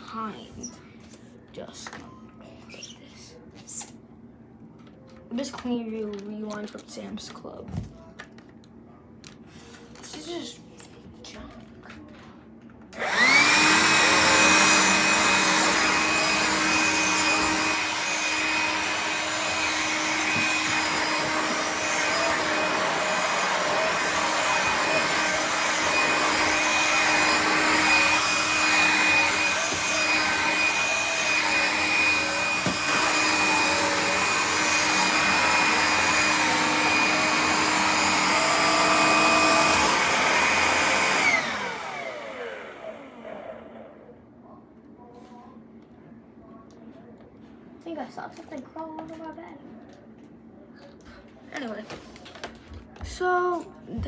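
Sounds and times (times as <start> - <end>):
vacuum motor whining: 13.0 - 44.1.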